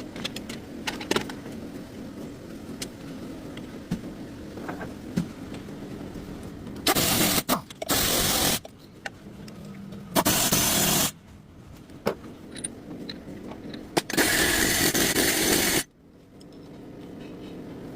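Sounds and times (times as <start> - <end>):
loud hissing spray: 6.9 - 8.6, 10.2 - 11.2, 14.1 - 15.9.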